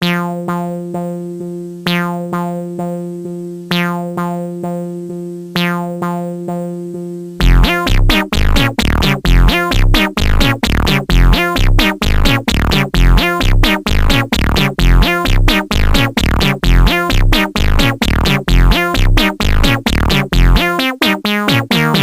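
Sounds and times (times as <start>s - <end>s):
sustained synthesizer notes: 0.0s - 22.0s
loud beat with heavy bass: 7.4s - 22.0s.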